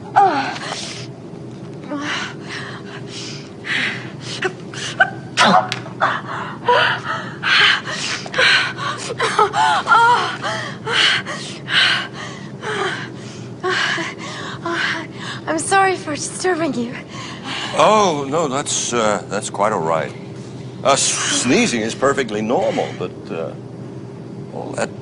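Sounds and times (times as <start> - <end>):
person sneezing: 5.4 - 5.7.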